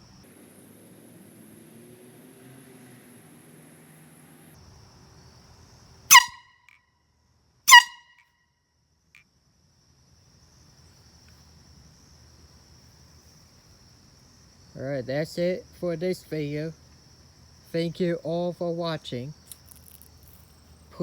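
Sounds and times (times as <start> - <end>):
air horn blasts: 6.1 - 6.7, 7.7 - 8.2.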